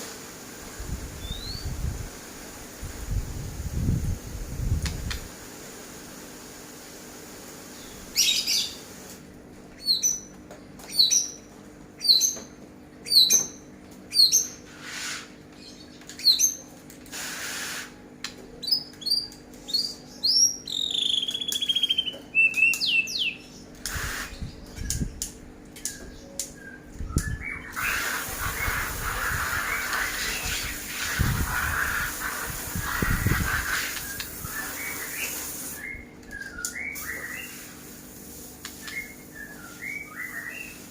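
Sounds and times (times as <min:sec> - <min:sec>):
songbird squawking and twittering: 0:18.6 - 0:25.2, 0:25.9 - 0:37.7, 0:38.8 - 0:40.9.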